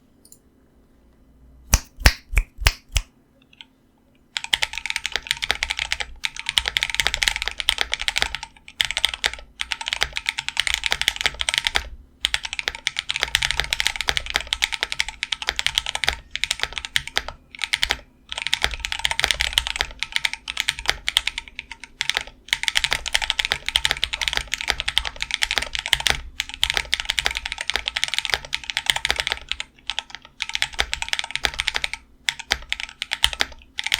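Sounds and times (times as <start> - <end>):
mechanical keyboard typing: 4.4 - 33.9.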